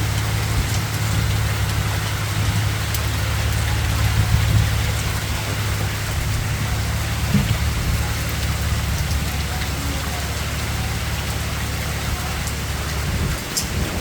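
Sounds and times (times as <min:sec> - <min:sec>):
hailstones falling: 0:00.0 - 0:14.0
low rumble: 0:00.0 - 0:14.0.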